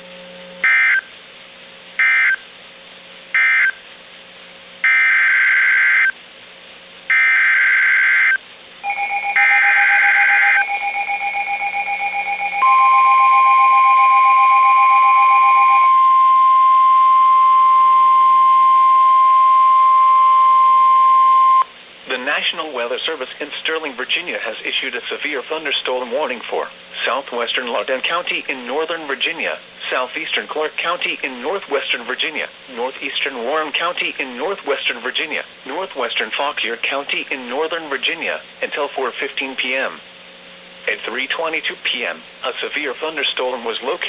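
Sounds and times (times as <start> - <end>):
rapidly pulsing alarm tone: 0.6 - 1.1, 2.0 - 2.4, 3.4 - 3.8, 4.8 - 6.1, 7.1 - 21.6
steady warning alarm tone: 0.6 - 1.1, 2.0 - 2.4, 3.4 - 3.8, 4.8 - 6.1, 7.1 - 21.7.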